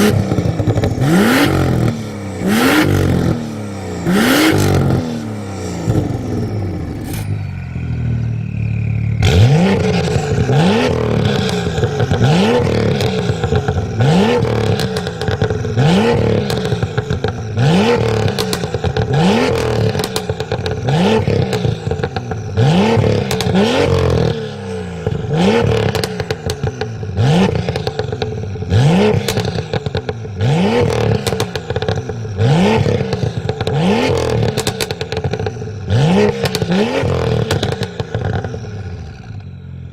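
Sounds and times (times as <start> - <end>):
exhaust crackles and pops: 0.0 - 7.2, 8.4 - 39.6
car engine revving: 0.0 - 39.6.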